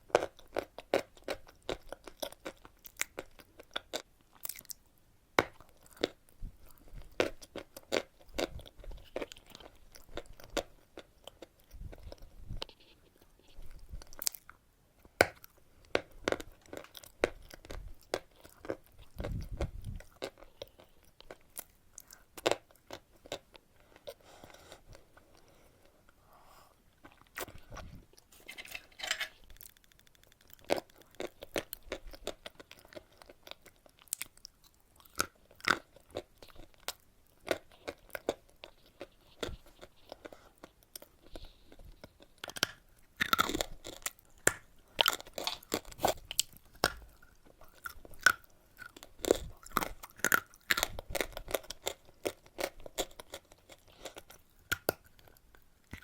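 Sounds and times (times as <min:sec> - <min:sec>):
wet chewing: 0:29.4 - 0:56.0.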